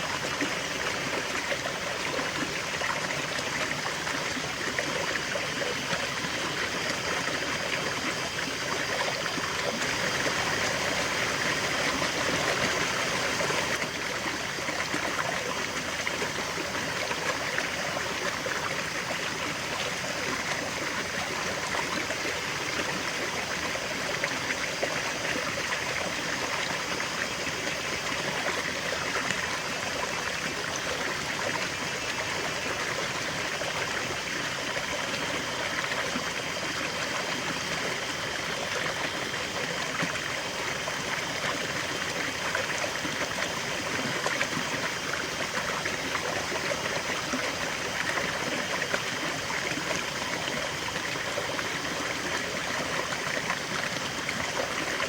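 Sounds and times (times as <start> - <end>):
water rushing over stones: 0.0 - 55.0.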